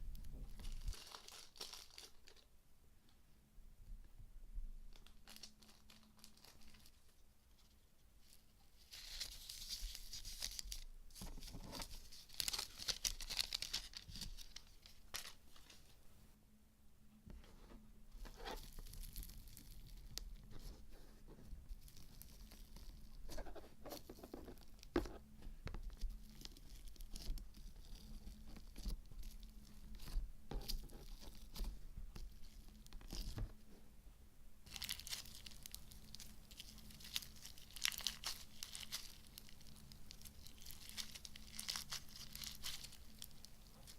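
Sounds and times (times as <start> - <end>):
rustling: 0.0 - 3.2, 4.9 - 16.3, 17.2 - 34.0, 34.6 - 43.9
slime crackling crunches: 34.6 - 43.9.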